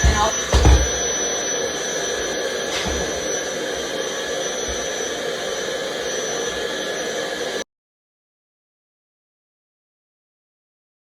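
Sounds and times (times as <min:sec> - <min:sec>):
whirring machine with high whine: 0:00.0 - 0:07.7.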